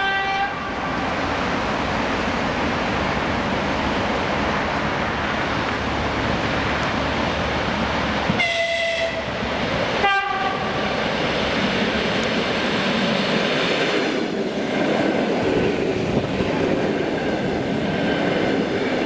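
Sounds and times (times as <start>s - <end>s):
train horn blasts: 0.0s - 0.9s, 8.3s - 9.3s, 10.0s - 10.8s
train wheels rumbling: 0.0s - 19.0s.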